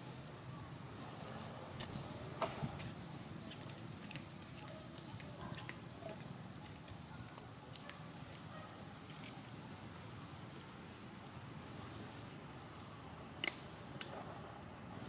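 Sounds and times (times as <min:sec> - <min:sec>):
outdoor background noise: 0:00.0 - 0:15.0
sharp clicks: 0:13.4 - 0:14.1.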